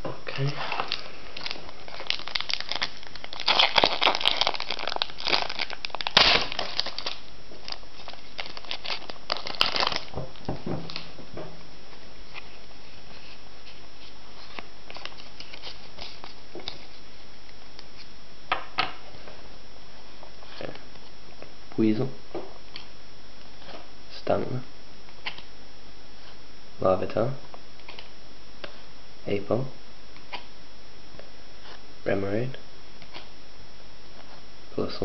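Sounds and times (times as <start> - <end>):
foil wrapper crinkling: 0.5 - 10.2, 14.0 - 17.0.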